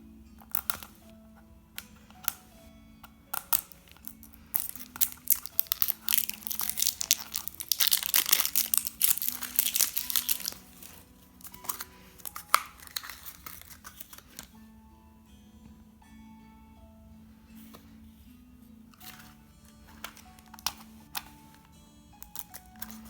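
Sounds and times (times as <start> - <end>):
plastic packaging crinkling and tearing: 3.4 - 14.6, 22.2 - 23.0.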